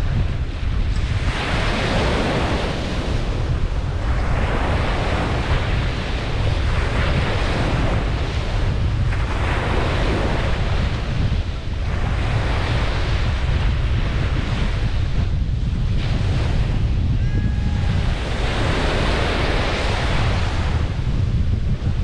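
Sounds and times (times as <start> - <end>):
ocean surf washing onto beach: 0.0 - 22.0
steady low rumble: 5.2 - 22.0.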